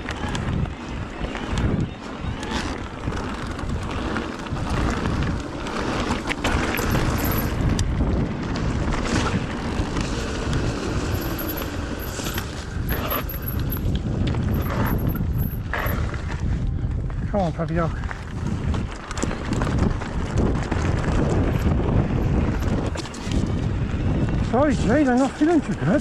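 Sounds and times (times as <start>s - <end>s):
tyre and wind rumble: 0.0s - 26.0s
bike knocks and rattles: 2.4s - 15.7s.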